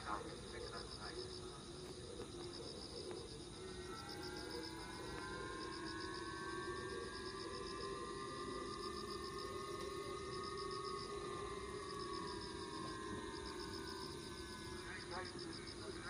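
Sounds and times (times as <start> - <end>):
insects chirring: 0.0 - 16.0
warning siren rising tones: 3.6 - 15.1.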